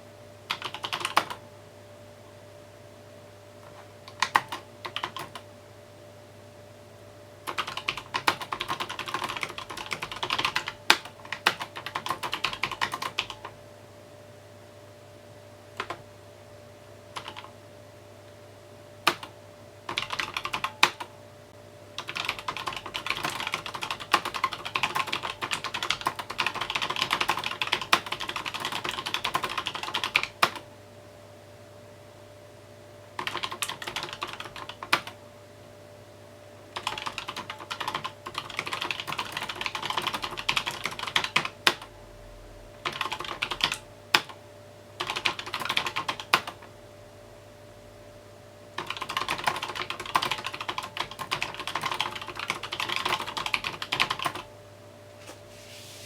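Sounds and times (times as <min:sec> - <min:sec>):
typing on mechanical keyboard: 0:00.5 - 0:01.4, 0:03.6 - 0:05.4, 0:07.5 - 0:13.6, 0:15.8 - 0:16.0, 0:17.2 - 0:17.5, 0:19.1 - 0:19.3, 0:19.9 - 0:21.1, 0:22.0 - 0:30.6, 0:33.2 - 0:35.2, 0:36.8 - 0:41.9, 0:42.8 - 0:44.4, 0:45.0 - 0:46.7, 0:48.8 - 0:54.5.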